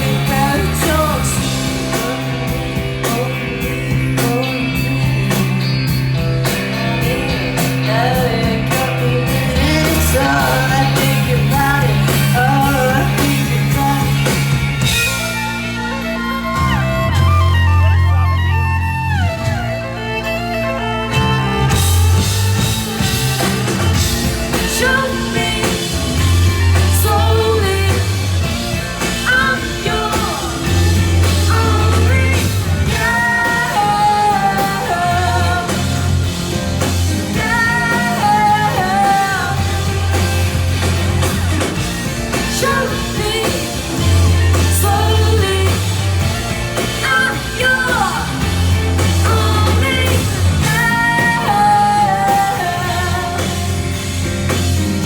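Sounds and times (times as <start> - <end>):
person singing: 0.0 - 15.6, 21.1 - 54.5
live punk band playing: 0.0 - 55.0.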